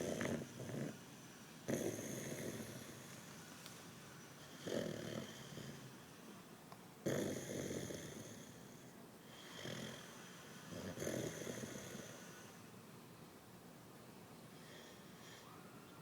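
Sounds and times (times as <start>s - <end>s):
dog snoring: 0.0s - 1.0s, 1.7s - 3.1s, 4.4s - 6.0s, 7.0s - 12.6s.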